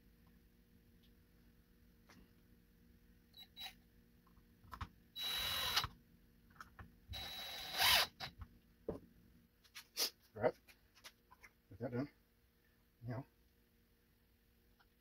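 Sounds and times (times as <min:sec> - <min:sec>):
small electric motor whirring: 0:05.2 - 0:05.9, 0:07.1 - 0:08.3.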